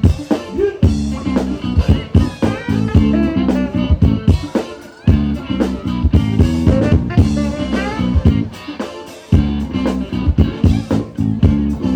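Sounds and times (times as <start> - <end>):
bass guitar: 0.0 - 11.9
drums: 0.0 - 11.9
lead guitar bending notes: 0.0 - 11.9.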